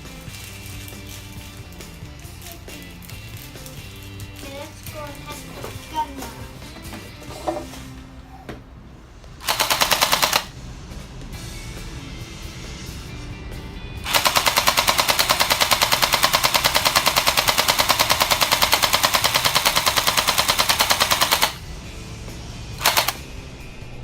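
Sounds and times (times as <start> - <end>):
toy blaster firing rapidly: 9.4 - 10.5, 14.1 - 21.6, 22.8 - 23.2.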